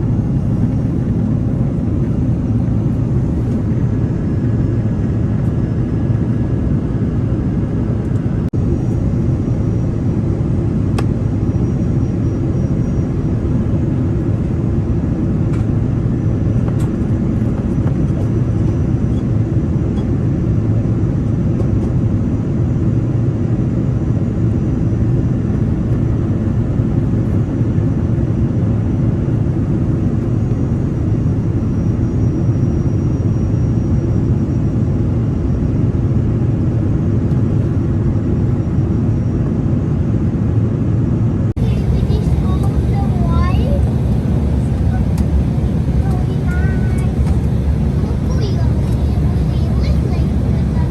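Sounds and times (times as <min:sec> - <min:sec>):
airplane cabin engine rumble: 0:00.0 - 0:50.9
faint clicks: 0:43.8 - 0:45.5.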